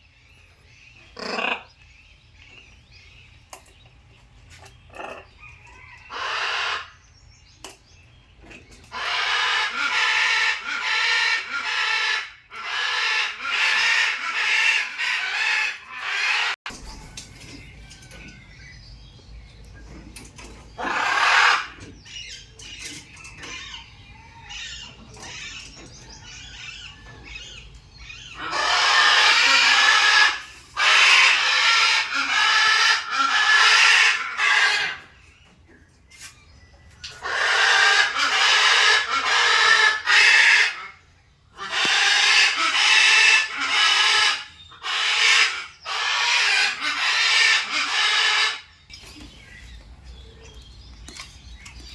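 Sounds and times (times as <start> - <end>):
macaws screeching: 5.0 - 7.0, 8.9 - 16.6, 20.8 - 35.2, 37.0 - 41.0, 41.6 - 48.8.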